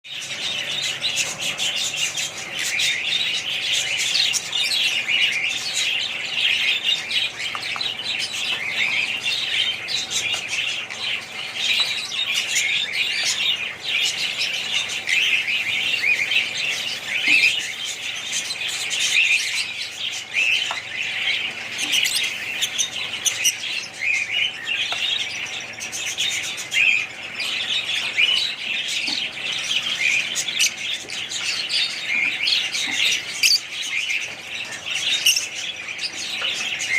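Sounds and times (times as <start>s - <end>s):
many small birds chirping: 0.0s - 36.9s.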